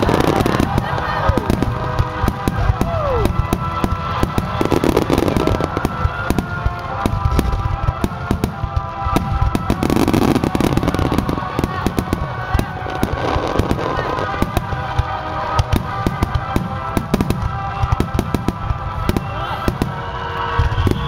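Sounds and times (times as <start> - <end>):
fireworks booming and crackling: 0.0 - 21.0
music playing: 0.0 - 21.0.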